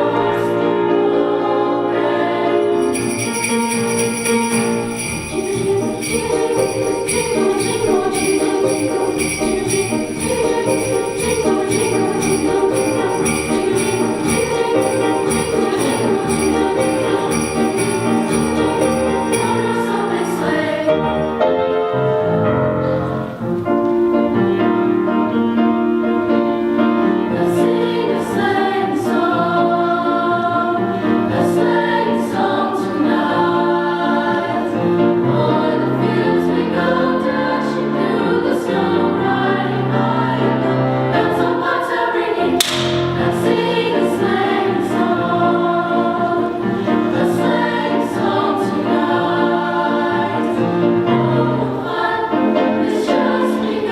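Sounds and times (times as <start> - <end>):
women's chorus singing: 0.0 - 21.5, 27.3 - 53.9
jingle bells shaking: 2.8 - 20.9.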